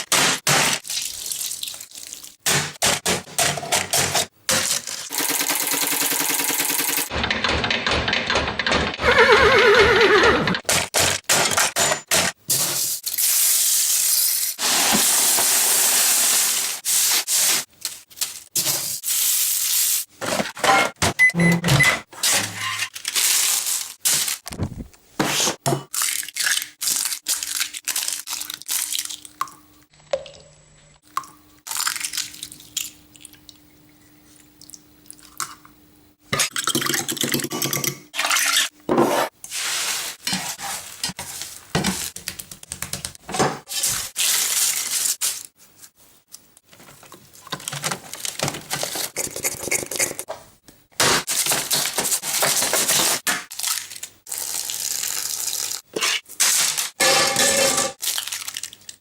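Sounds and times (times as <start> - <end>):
water splashing and dripping: 0.6 - 2.4
clattering and knocking: 7.1 - 9.1.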